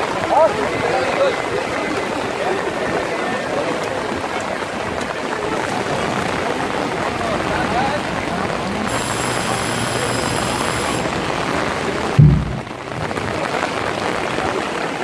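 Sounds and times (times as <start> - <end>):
heavy rain falling: 0.0 - 15.0
deep thump: 12.2 - 12.8.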